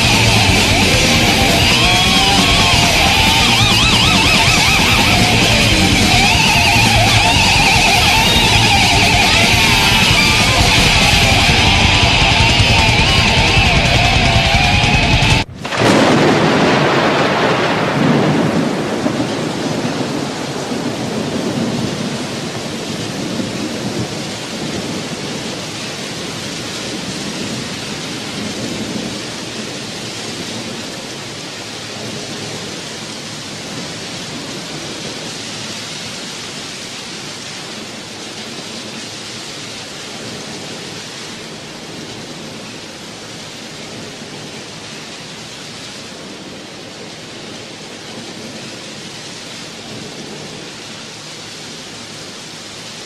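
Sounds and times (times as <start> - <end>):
rumbling thunder: 0.0 - 30.9
rain: 0.0 - 53.0.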